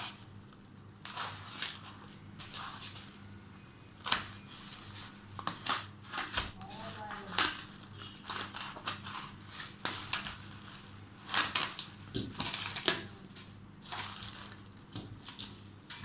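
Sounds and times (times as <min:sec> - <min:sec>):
styrofoam crunching and rustling: 0:00.0 - 0:16.0.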